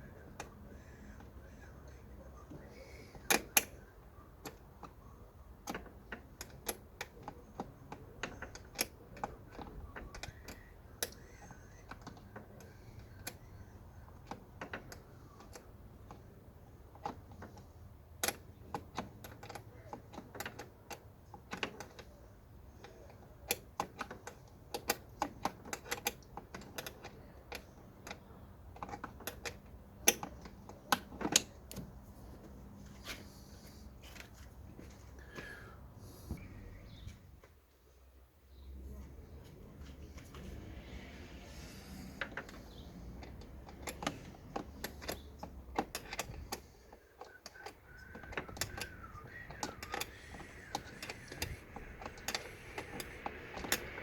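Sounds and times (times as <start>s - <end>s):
plastic parts clicking: 5.6s - 32.5s, 40.2s - 54.0s.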